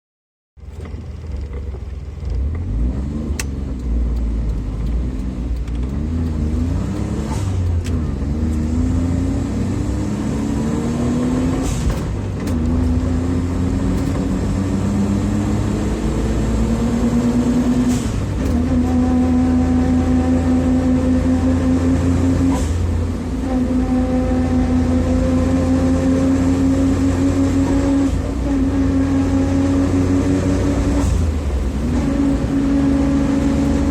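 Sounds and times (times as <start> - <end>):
pinion gear whining: 0.6 - 8.8
low engine and road rumble: 0.6 - 33.9.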